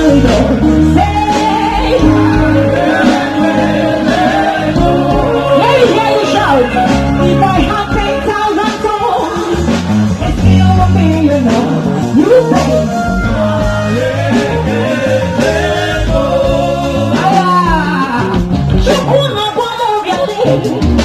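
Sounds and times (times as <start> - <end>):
people singing: 0.0 - 9.6, 11.4 - 18.3
bass guitar: 0.0 - 21.0
drums: 0.0 - 21.0.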